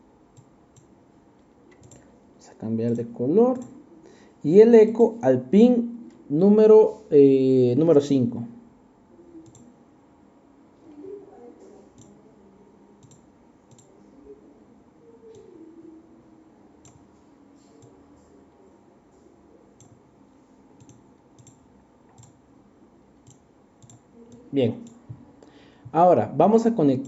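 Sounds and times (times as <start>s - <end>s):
computer mouse clicking: 1.7s - 2.1s, 2.9s - 3.8s, 9.4s - 9.7s, 12.0s - 12.2s, 13.0s - 13.9s, 15.2s - 15.6s, 16.8s - 18.0s, 19.8s - 20.0s, 20.8s - 22.4s, 23.2s - 25.2s.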